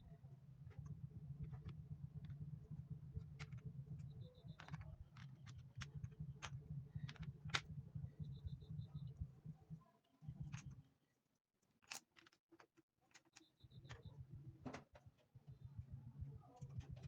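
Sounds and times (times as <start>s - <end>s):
low steady hum: 0.0s - 10.9s.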